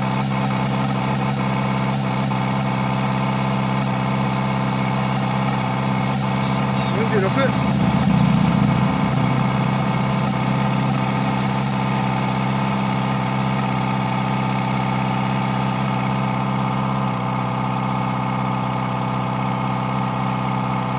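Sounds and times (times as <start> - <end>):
motorcycle engine idling: 0.0 - 20.9.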